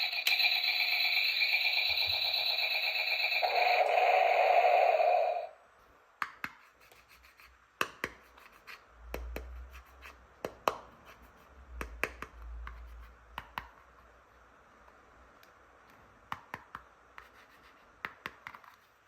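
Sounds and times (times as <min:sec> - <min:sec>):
loud electronic tone: 0:00.0 - 0:05.6.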